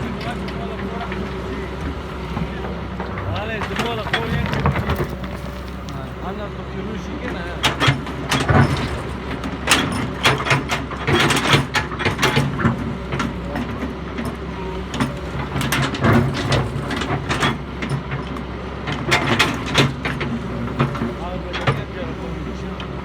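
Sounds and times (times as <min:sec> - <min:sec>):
excavator diesel engine hum: 0:00.0 - 0:23.0
metallic clanks and knocks: 0:07.6 - 0:21.9.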